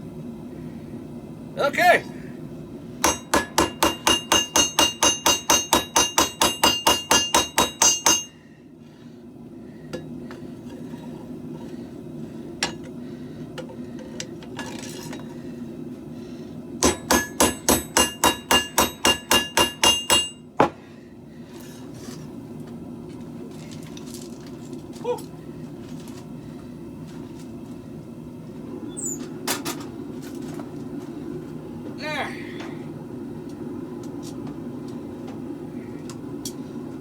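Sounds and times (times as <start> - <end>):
steady low hum: 0.0 - 37.0
hammer striking steel on anvil: 3.0 - 8.4, 16.8 - 20.7.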